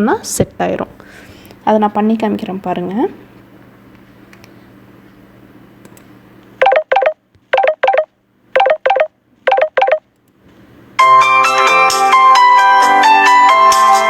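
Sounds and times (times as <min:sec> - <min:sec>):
musical ringtone: 0:06.6 - 0:10.0
telephone-style ringtone: 0:06.6 - 0:10.0.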